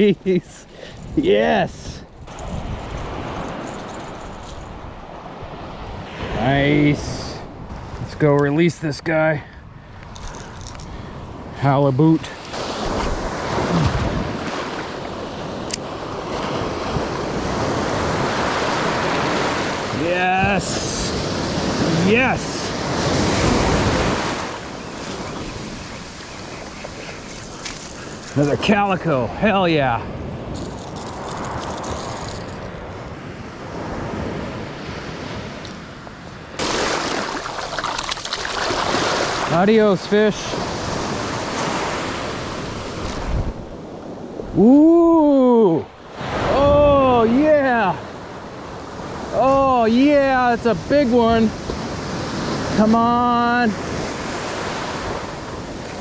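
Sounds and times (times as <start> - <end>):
wind on microphone: 1.0 - 6.4, 12.6 - 28.6, 40.6 - 45.2, 46.3 - 47.3
ocean surf breaking on beach: 2.3 - 7.9, 12.3 - 56.0.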